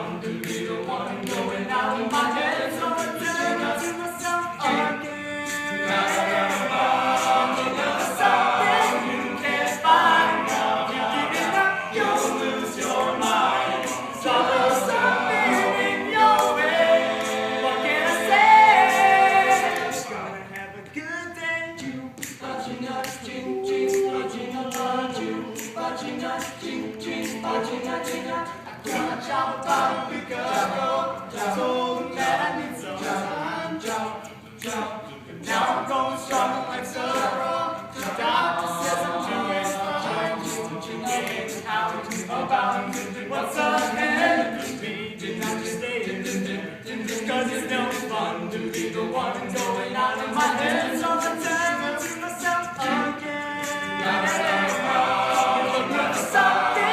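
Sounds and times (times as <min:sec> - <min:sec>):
male vocal group singing harmony: 0:00.0 - 0:56.9
sharp percussive clicks: 0:00.2 - 0:21.0, 0:21.8 - 0:29.9, 0:33.0 - 0:56.9.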